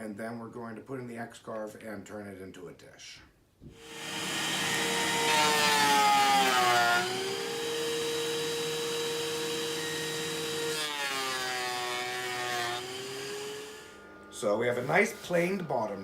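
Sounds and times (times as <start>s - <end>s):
power tool motor humming: 3.8s - 16.0s.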